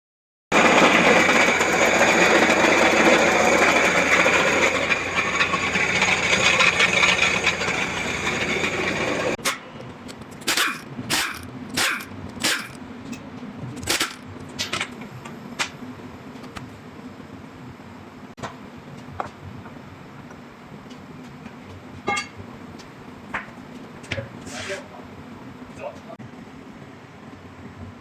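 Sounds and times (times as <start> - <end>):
diesel engine with metallic rattle: 0.6 - 9.7, 10.3 - 12.8
short bursts of sound: 10.4 - 12.8.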